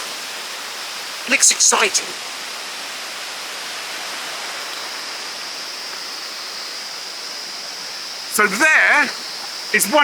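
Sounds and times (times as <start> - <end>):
river rushing: 0.0 - 10.0
thin high tone: 8.3 - 10.0.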